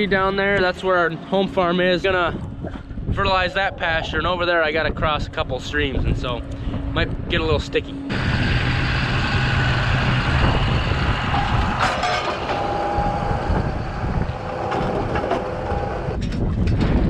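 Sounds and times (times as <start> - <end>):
faint steady whine: 5.4 - 16.2
tractor engine hum: 6.4 - 16.2.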